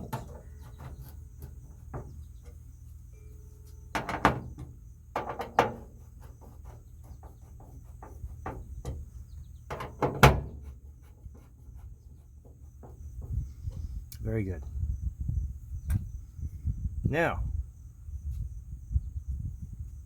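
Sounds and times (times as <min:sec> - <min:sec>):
sharp clicks and knocks: 0:03.7 - 0:14.3.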